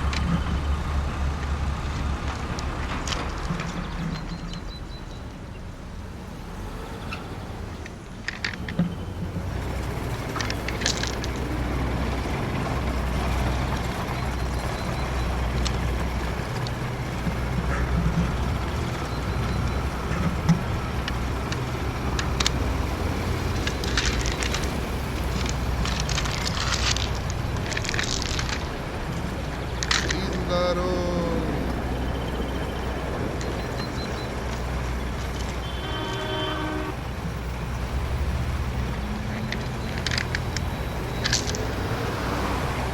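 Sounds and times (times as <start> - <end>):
stones clattering on plastic: 10.3 - 11.5, 20.2 - 30.5, 39.5 - 42.0.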